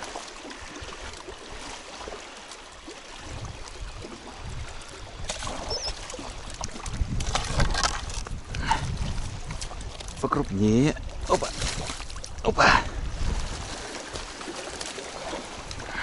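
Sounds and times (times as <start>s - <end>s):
water splashing and sloshing: 0.0s - 16.0s
wind buffeting microphone: 3.1s - 14.5s.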